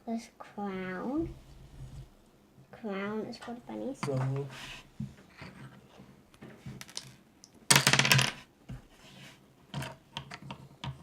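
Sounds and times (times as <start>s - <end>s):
plastic pieces clicking: 6.8s - 8.4s.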